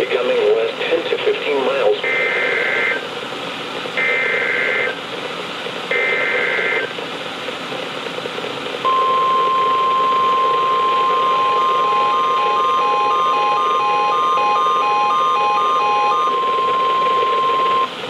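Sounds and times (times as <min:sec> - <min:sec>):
receiver static: 0:00.0 - 0:03.1, 0:04.0 - 0:05.0, 0:05.9 - 0:06.9, 0:08.9 - 0:17.9
two-tone data warble: 0:02.0 - 0:03.0, 0:05.9 - 0:06.9, 0:08.9 - 0:17.9
steady alert tone: 0:08.9 - 0:17.9.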